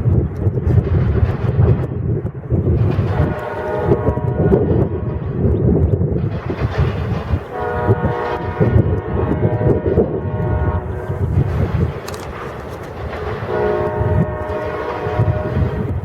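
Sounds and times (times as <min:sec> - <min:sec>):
low train rumble: 0:00.0 - 0:16.0
locomotive air horn: 0:03.1 - 0:05.0, 0:07.5 - 0:11.5, 0:13.3 - 0:16.0.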